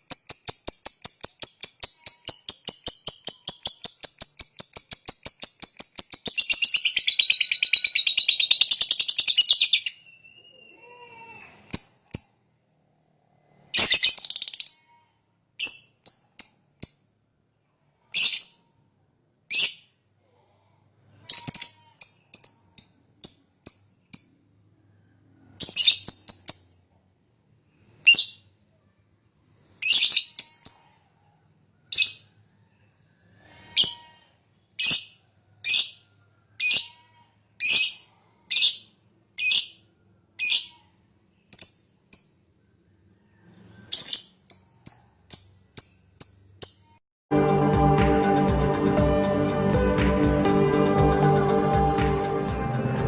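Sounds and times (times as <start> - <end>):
lovebird chattering trill: 0.0 - 9.9, 21.3 - 24.3
lovebird chirps: 0.0 - 12.4, 13.7 - 15.0, 15.6 - 17.1, 18.2 - 18.7, 21.3 - 24.4, 25.5 - 26.8, 28.0 - 28.5, 29.8 - 30.9, 37.6 - 39.8, 41.4 - 42.4, 43.8 - 47.0.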